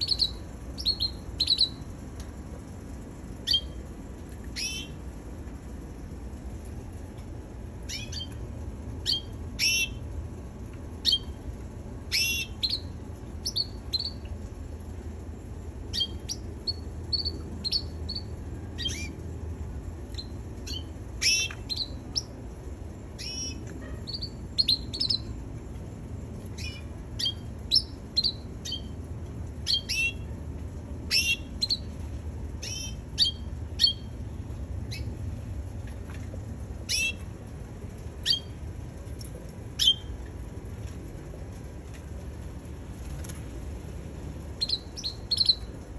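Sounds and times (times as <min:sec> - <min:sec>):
canary chirping: 0:00.0 - 0:01.9, 0:03.4 - 0:03.8, 0:04.5 - 0:05.0, 0:07.9 - 0:08.4, 0:09.0 - 0:10.0, 0:11.0 - 0:11.4, 0:12.1 - 0:14.3, 0:15.9 - 0:19.2, 0:20.1 - 0:22.3, 0:23.2 - 0:25.4, 0:26.6 - 0:29.0, 0:29.6 - 0:30.3, 0:31.1 - 0:31.9, 0:32.6 - 0:34.2, 0:34.9 - 0:35.1, 0:36.9 - 0:37.2, 0:38.2 - 0:38.6, 0:39.8 - 0:40.1, 0:44.6 - 0:45.7
steady low hum: 0:00.0 - 0:45.9.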